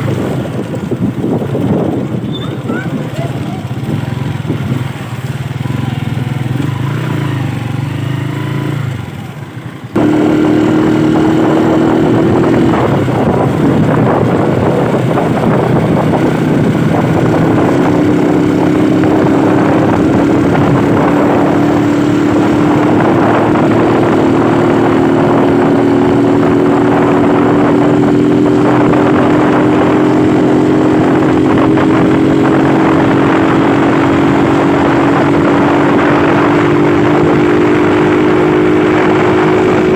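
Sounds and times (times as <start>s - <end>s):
low engine sound: 0.0s - 39.9s
motorcycle engine running: 0.0s - 39.9s
road noise: 0.0s - 39.9s
wind rushing: 9.9s - 39.9s.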